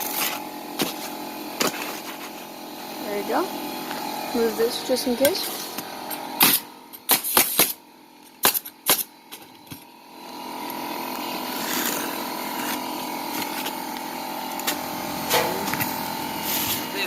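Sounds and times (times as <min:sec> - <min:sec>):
machine hum: 0:00.0 - 0:07.1, 0:09.2 - 0:17.0
nail gun shots: 0:06.4 - 0:07.8, 0:08.4 - 0:09.1.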